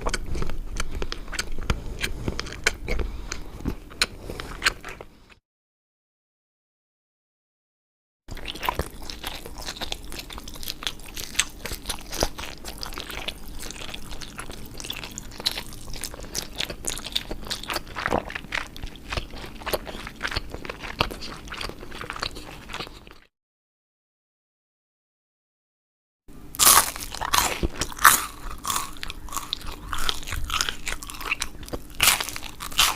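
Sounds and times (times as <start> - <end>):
person chewing crunchy food: 0.0 - 5.4, 8.3 - 23.3, 26.4 - 32.9.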